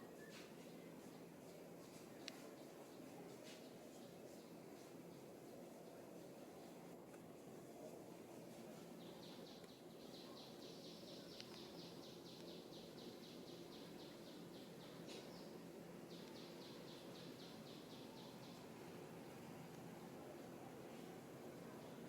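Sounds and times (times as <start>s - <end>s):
low background noise: 0.0s - 22.0s
bird chirping: 9.0s - 18.6s.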